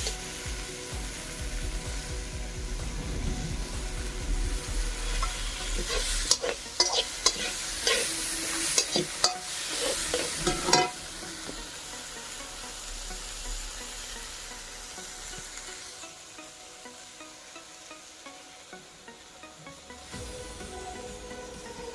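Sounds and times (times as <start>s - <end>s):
food sizzling in a pan: 0.0s - 21.9s
spatula scraping a pan: 5.2s - 11.7s.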